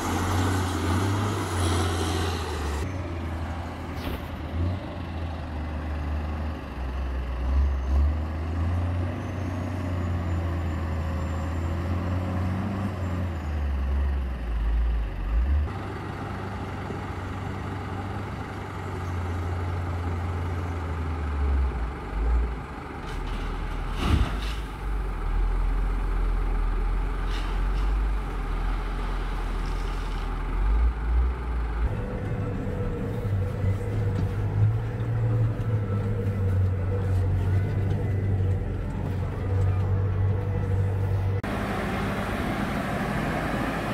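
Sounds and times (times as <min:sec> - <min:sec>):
heavy engine changing speed: 0:00.0 - 0:06.3, 0:25.7 - 0:43.9.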